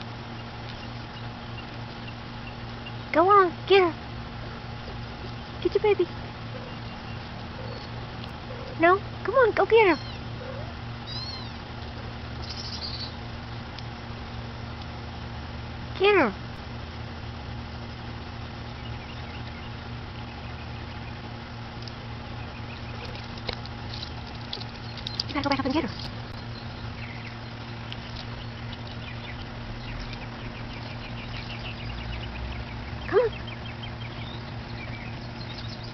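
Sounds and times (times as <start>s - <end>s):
steady low hum: 0.0s - 35.9s
high animal peeps: 4.8s - 13.2s, 18.6s - 35.9s
kitten mewing: 9.9s - 11.6s
rising animal call: 9.9s - 11.6s.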